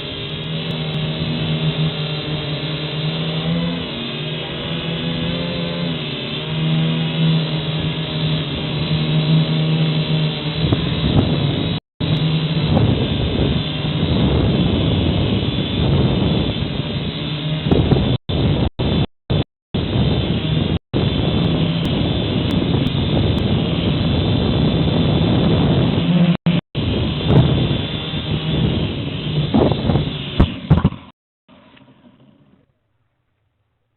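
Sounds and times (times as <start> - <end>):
drone motors whirring: 0.0 - 31.1
wind buffeting microphone: 6.7 - 31.1.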